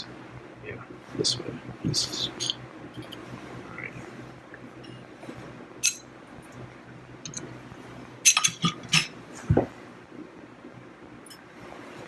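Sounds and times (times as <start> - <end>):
metal parts clinking: 8.3 - 9.1.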